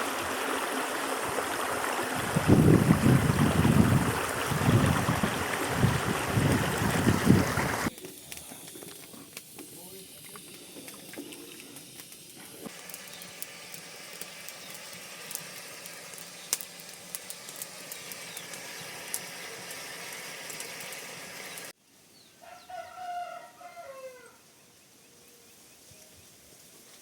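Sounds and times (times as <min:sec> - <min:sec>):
steady hiss with clicks: 0:07.9 - 0:21.8
rooster crowing: 0:22.4 - 0:24.5.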